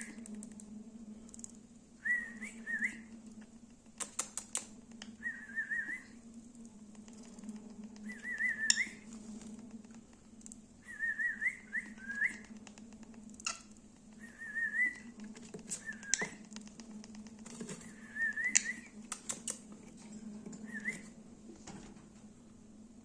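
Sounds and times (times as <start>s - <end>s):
steady low hum: 0.0s - 23.0s
sharp clicks: 3.8s - 5.1s, 18.5s - 19.7s
lovebirds chirping: 8.0s - 9.1s, 10.4s - 16.6s.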